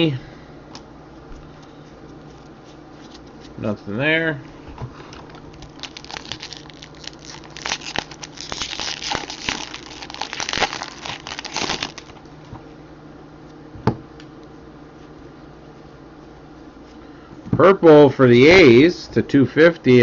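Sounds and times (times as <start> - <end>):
foil wrapper crinkling and tearing: 5.3 - 12.2.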